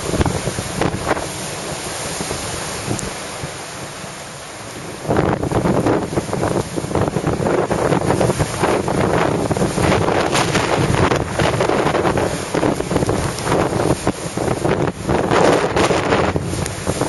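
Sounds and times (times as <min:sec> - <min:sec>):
gale wind buffeting microphone: 0:00.0 - 0:17.0
rough sea waves: 0:00.0 - 0:17.0.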